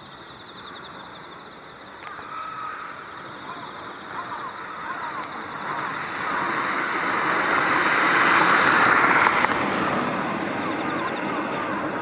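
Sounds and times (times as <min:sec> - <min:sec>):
crows cawing faintly: 0:02.0 - 0:06.0
road vehicle approaching: 0:03.0 - 0:12.0.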